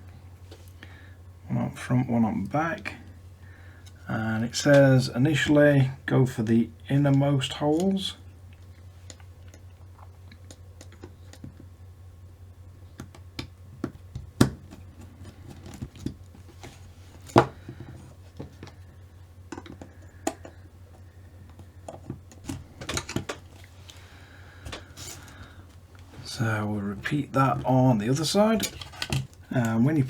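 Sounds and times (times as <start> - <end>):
low steady hum: 0.0 - 30.0
plastic parts clicking: 21.5 - 24.0, 27.0 - 29.8.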